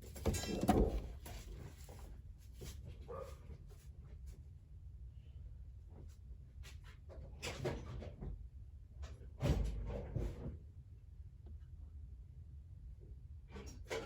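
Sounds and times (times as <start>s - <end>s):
tools clicking and clattering: 0.0s - 1.5s.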